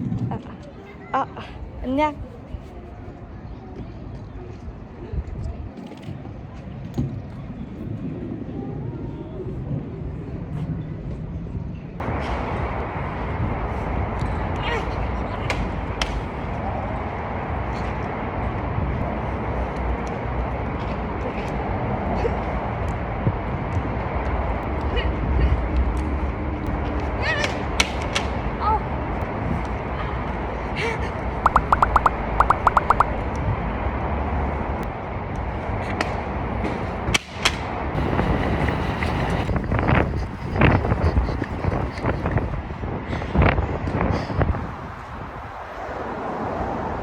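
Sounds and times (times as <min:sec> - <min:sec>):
wind rumble on microphone: 0:00.0 - 0:47.0
faint high ticks: 0:31.4 - 0:33.2
high chirping beeps: 0:31.4 - 0:33.2.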